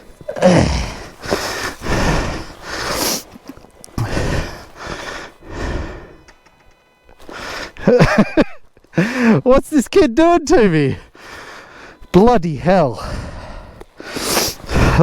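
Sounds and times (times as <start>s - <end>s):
person exhaling forcefully: 0.3s - 3.3s, 4.0s - 6.2s, 13.0s - 15.0s.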